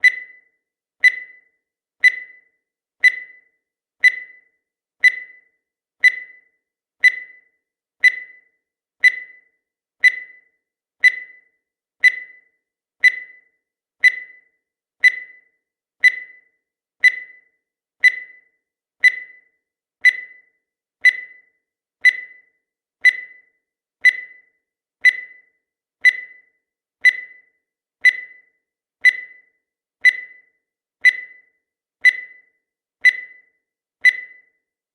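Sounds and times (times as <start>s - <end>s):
high-pitched electronic beeps: 0.0s - 0.4s.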